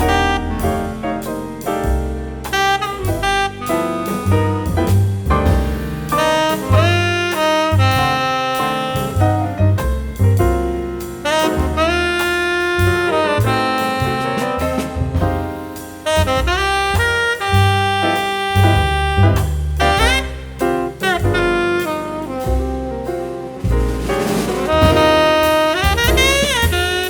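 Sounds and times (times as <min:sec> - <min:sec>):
horn playing held notes: 0:00.0 - 0:01.0, 0:02.5 - 0:04.6, 0:06.1 - 0:09.6, 0:11.2 - 0:15.0, 0:16.0 - 0:23.7, 0:24.3 - 0:27.0
jazz music: 0:00.0 - 0:27.0.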